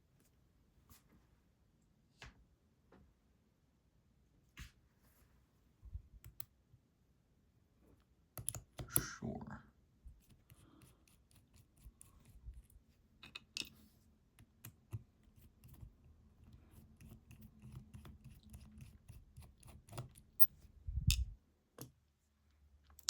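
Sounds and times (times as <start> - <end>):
metallic clicks of lock parts: 21.1 - 21.9.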